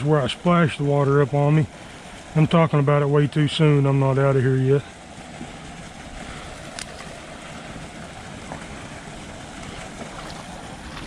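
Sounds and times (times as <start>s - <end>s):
water sloshing around wading legs: 5.0s - 11.0s.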